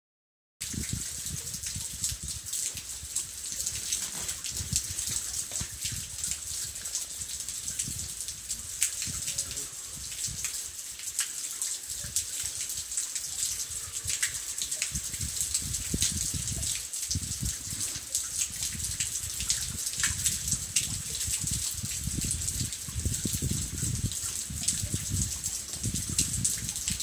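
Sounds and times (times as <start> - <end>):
stream water rushing: 1.8 - 22.8.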